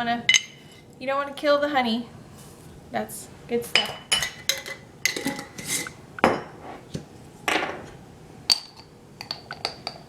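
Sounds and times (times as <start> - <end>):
utensil scraping: 5.3 - 6.0.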